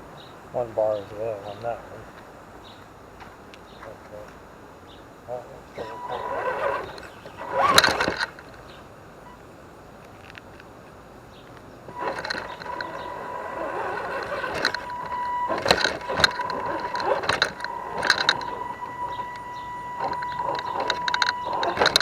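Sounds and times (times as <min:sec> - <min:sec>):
electric motor and gearbox whining: 0:05.6 - 0:08.8, 0:11.9 - 0:22.0.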